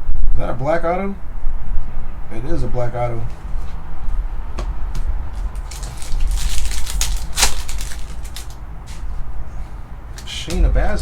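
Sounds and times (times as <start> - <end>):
steady low hum: 0.0 - 11.0
cards rustling and sliding: 3.2 - 10.5.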